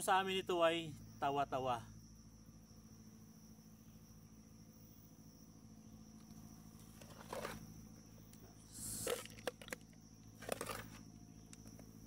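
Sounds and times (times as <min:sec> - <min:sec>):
faint steady hum: 0:00.0 - 0:12.0
hiss: 0:08.7 - 0:09.2.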